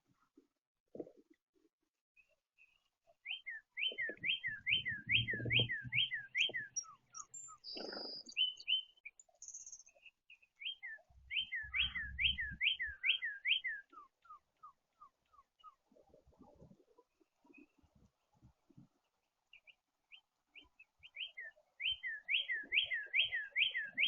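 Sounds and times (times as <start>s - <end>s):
descending bird notes: 10.6s - 15.8s.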